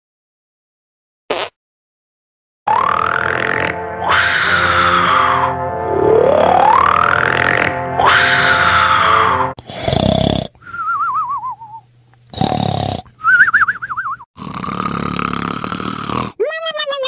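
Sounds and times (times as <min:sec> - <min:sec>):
cartoon snoring with whistle: 0:09.7 - 0:11.2, 0:12.4 - 0:13.5, 0:14.4 - 0:16.4.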